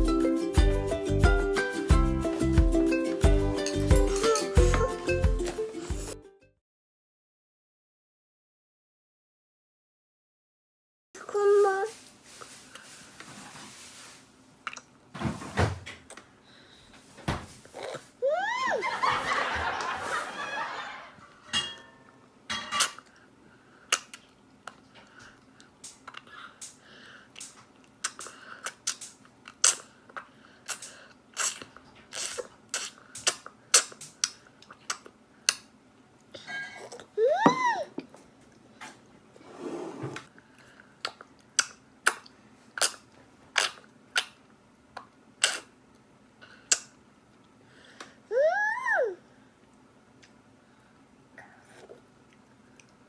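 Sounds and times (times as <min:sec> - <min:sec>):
soft rustle: 0:11.3 - 0:14.4.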